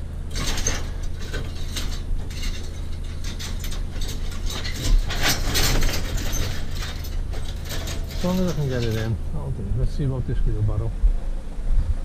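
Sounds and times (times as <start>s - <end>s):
barbed wire rattling and scraping: 0.0s - 9.3s
steady low hum: 0.0s - 12.0s.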